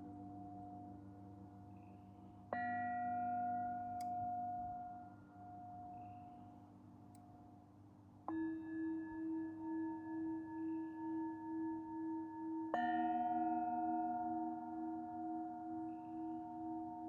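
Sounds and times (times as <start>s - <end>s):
lower-pitched singing bowl: 0.0s - 6.7s, 8.3s - 17.0s
singing bowls ringing: 1.8s - 6.5s, 8.3s - 17.0s.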